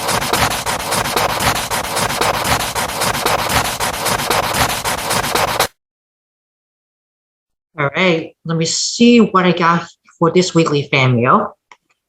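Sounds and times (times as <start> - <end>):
rough rubbing or scratching: 0.0 - 5.7.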